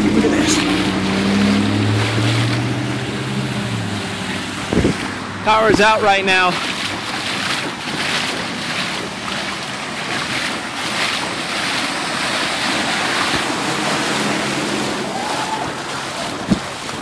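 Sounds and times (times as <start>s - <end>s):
heavy rain: 0.0s - 7.1s, 10.8s - 17.0s
rushing flood water: 0.0s - 17.0s.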